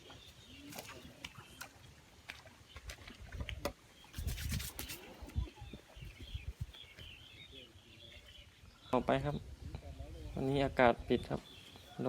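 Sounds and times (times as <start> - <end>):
faint birds twittering: 0.0 - 12.0
wind gusting across microphone: 3.2 - 7.2.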